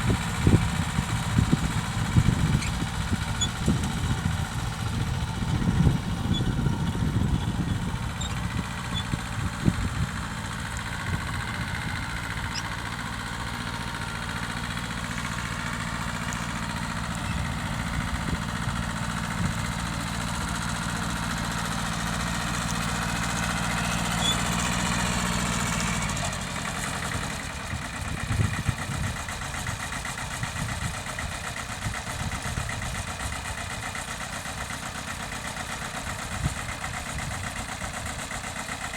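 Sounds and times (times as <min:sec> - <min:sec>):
tractor engine running: 0:00.0 - 0:38.9.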